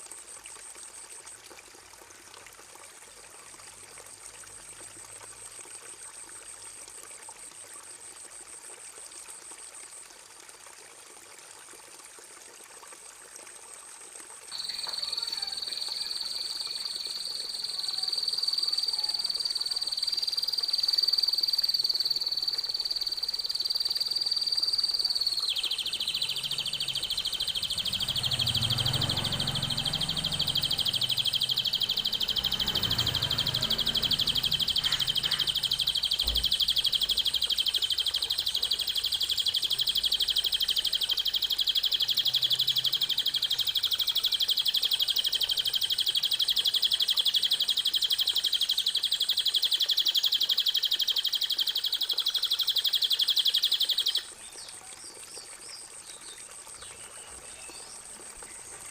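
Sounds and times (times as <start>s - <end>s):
songbird trill: 14.5s - 58.9s.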